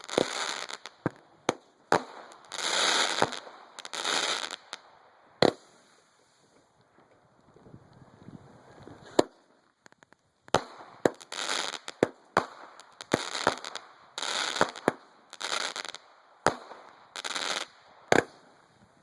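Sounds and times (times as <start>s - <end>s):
firework crackling: 0.0s - 6.7s, 7.9s - 19.0s.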